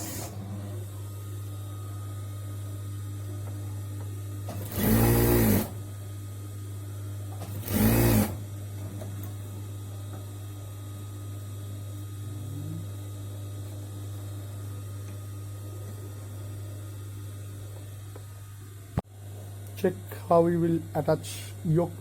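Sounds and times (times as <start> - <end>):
sewing machine stitching: 4.5 - 5.8, 7.3 - 8.4
steady low hum: 8.4 - 22.0.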